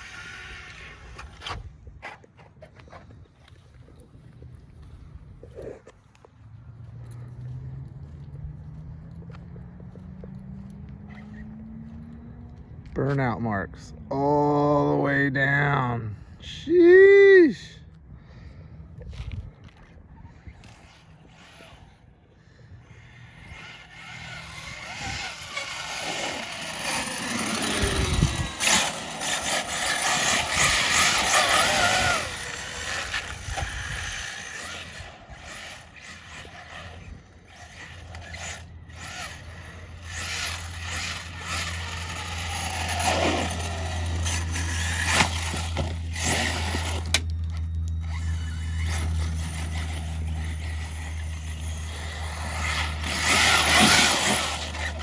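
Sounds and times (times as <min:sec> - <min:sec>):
rc truck motor whine: 0:00.0 - 0:01.7, 0:19.7 - 0:55.0
steady low hum: 0:17.7 - 0:55.0
tyres spinning and scrubbing: 0:23.6 - 0:47.2, 0:48.1 - 0:55.0.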